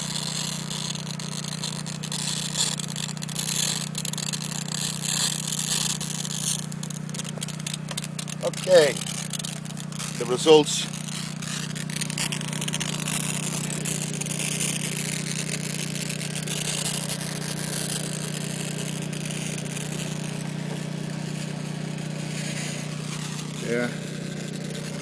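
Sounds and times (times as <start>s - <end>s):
plasma torch hum and hiss: 0.0s - 25.0s.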